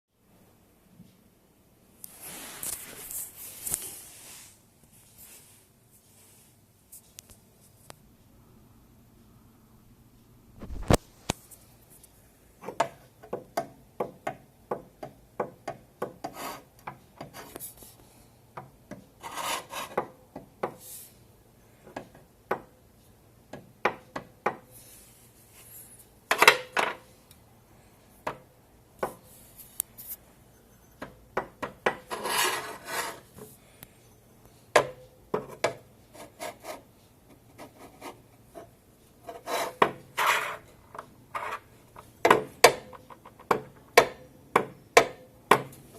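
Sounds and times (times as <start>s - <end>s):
parts scraping and sliding: 2.0s - 7.8s, 19.2s - 20.0s, 32.0s - 33.6s, 38.6s - 42.1s.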